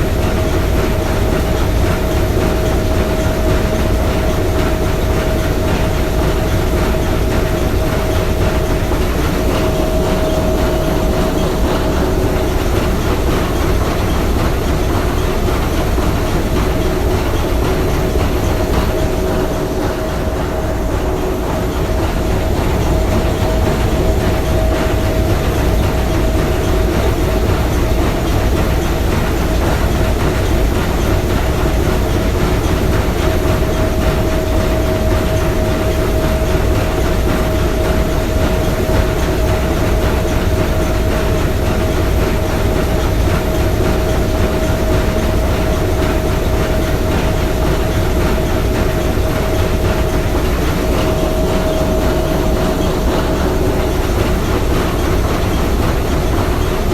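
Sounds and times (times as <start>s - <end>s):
steam engine running: 0.0s - 56.9s
steady tone: 6.6s - 28.4s, 48.8s - 56.9s.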